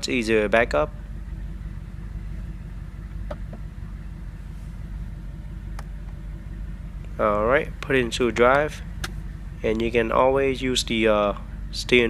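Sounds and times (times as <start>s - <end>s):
car engine idling: 0.0s - 12.0s.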